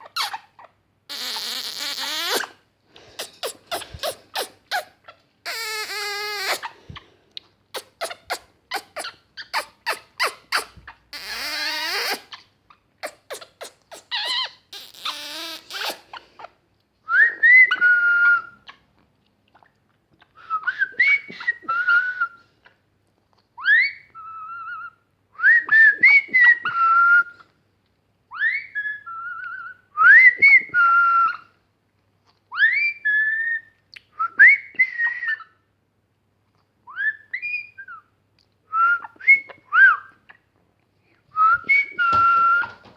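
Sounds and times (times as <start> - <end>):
whistled phrase: 41.4 - 42.8.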